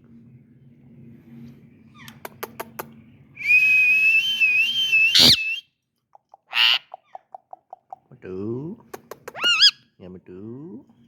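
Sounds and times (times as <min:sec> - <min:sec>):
high wavering whistle: 0:03.4 - 0:05.7.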